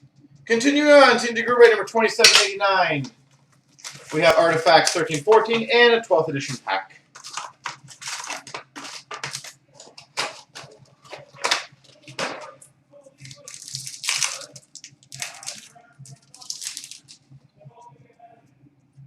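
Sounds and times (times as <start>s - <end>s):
foil wrappers crinkling and tearing: 3.7s - 12.6s, 13.2s - 17.2s.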